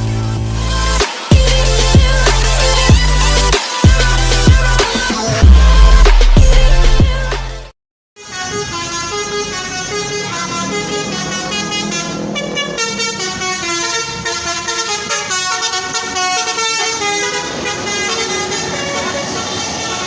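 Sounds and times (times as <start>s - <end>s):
bus horn playing melody: 8.2s - 20.0s.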